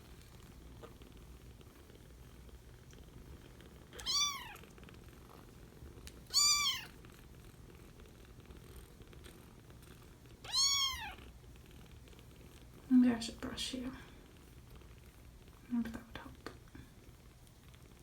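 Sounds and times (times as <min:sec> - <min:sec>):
kittens meowing: 0:04.0 - 0:04.6, 0:06.3 - 0:06.9, 0:10.4 - 0:11.2.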